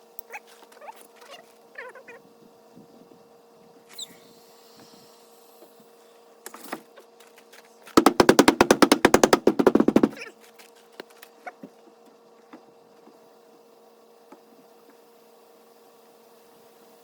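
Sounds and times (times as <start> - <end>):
air pump clattering: 8.0 - 10.2.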